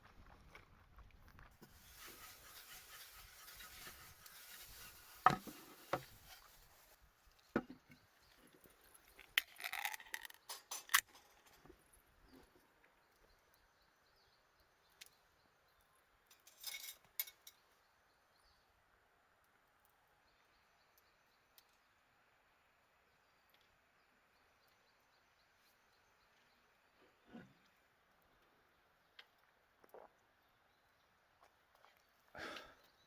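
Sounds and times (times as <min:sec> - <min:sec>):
knocks and clinks of small objects: 0:09.1 - 0:11.6.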